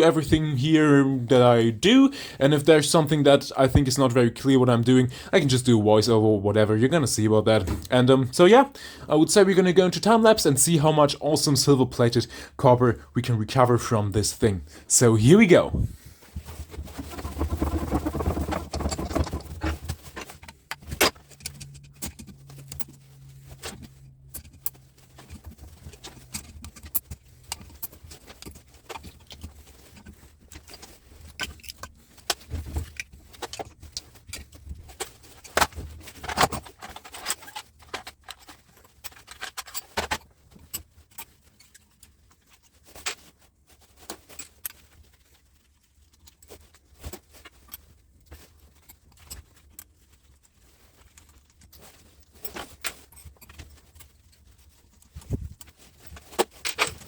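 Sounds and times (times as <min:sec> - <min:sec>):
metal tools clinking and rattling: 0:17.0 - 0:22.9.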